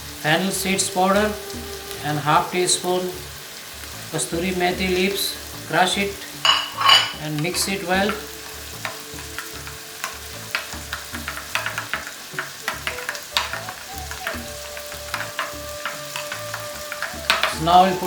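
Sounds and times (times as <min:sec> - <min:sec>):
masala sizzling in hot oil: 0:00.0 - 0:18.0
spoon clicking against pan: 0:06.4 - 0:17.6.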